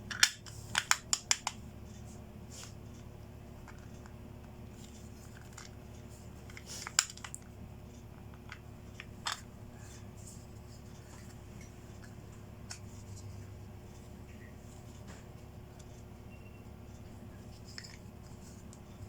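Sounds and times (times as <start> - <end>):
faint steady hum: 0.0 - 19.0
plastic toy pieces clicking: 0.1 - 1.5.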